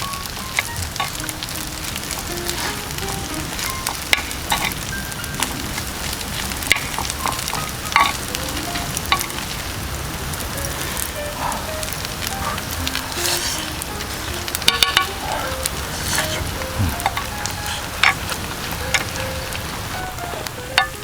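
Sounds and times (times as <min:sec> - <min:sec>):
rice sizzling on hot griddle: 0:00.0 - 0:21.0
spatula clicks and scrapes: 0:12.2 - 0:18.2.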